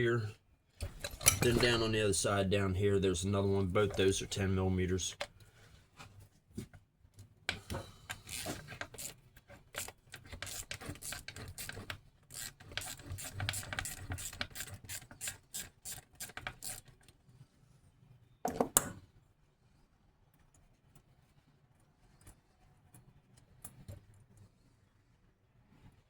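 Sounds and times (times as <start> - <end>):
metal clank: 0.9 - 2.2
ratchet wrench clicking rapidly: 8.2 - 9.2, 9.8 - 16.9.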